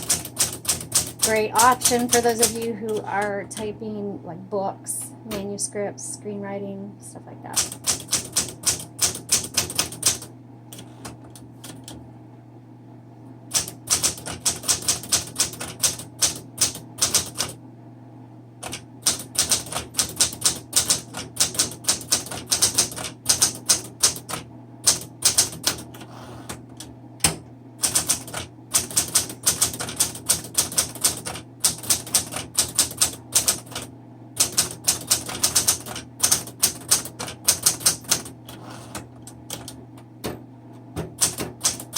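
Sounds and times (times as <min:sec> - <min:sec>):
manual typewriter key strikes: 0:41.0 - 0:41.9.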